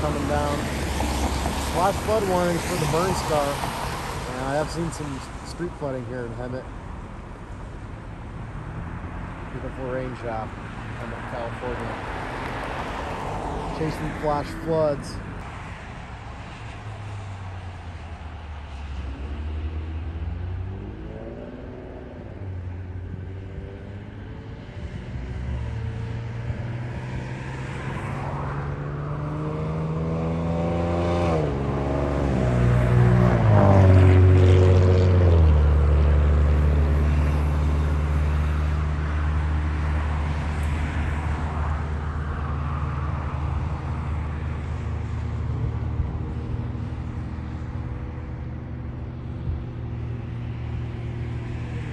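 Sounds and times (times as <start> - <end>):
tyre and road noise: 0.0 - 51.9
car engine accelerating: 18.8 - 48.0.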